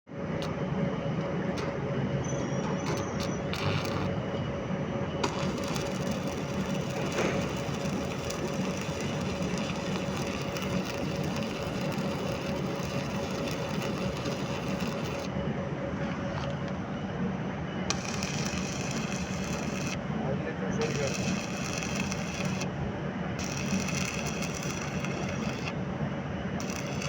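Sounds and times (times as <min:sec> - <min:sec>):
machine hum: 0:00.1 - 0:27.0
arc welding hiss: 0:02.9 - 0:04.2, 0:05.2 - 0:15.3, 0:17.9 - 0:20.0, 0:20.8 - 0:22.7, 0:23.4 - 0:25.7, 0:26.6 - 0:27.0.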